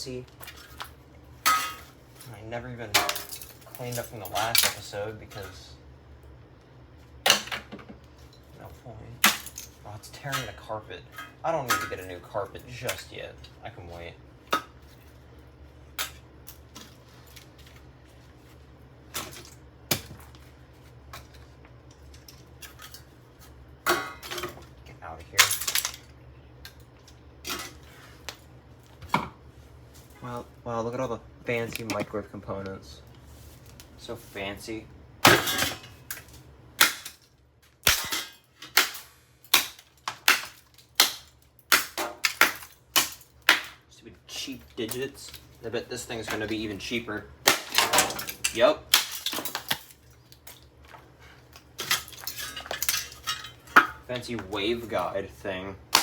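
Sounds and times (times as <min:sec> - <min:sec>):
hammer smashing metal and plastic: 0:02.9 - 0:04.9, 0:09.2 - 0:10.6, 0:25.4 - 0:26.1, 0:35.2 - 0:43.8, 0:47.4 - 0:50.0, 0:51.8 - 0:54.1.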